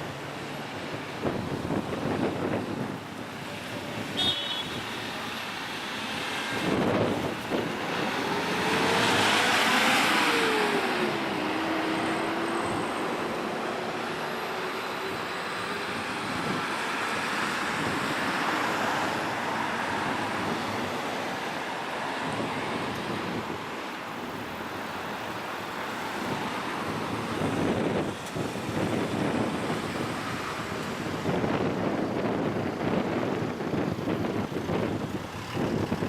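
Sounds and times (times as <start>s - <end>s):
cars driving past: 5.0s - 36.0s.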